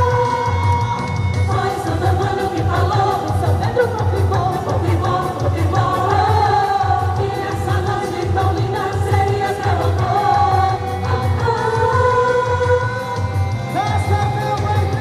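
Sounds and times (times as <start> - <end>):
pulsing bass beat: 0.0 - 15.0
voices singing together: 0.0 - 15.0.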